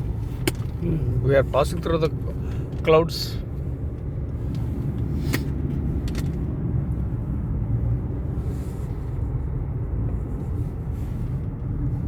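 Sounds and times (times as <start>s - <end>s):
car cabin road noise: 0.0s - 12.0s.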